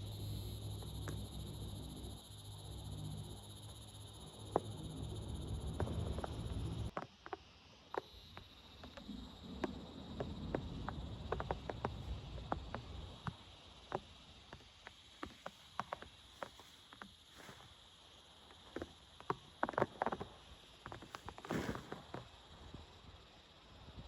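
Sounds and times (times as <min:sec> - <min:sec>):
high insect-like tone: 0:00.0 - 0:06.9.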